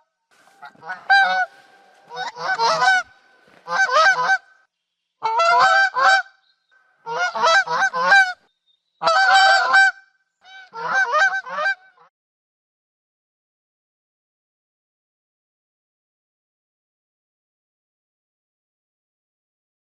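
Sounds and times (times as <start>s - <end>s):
goose honking: 0.4s - 4.6s, 5.2s - 6.3s, 7.1s - 8.4s, 9.0s - 12.1s.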